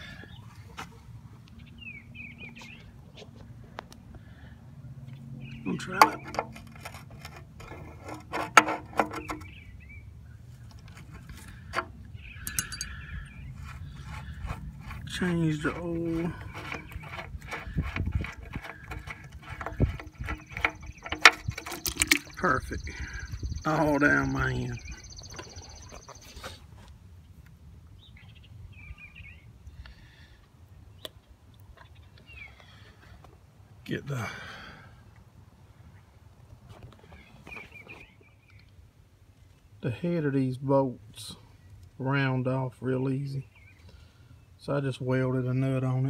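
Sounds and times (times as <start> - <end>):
sharp clicks and knocks: 16.6 - 22.5
high squeaky chirps: 19.8 - 26.5.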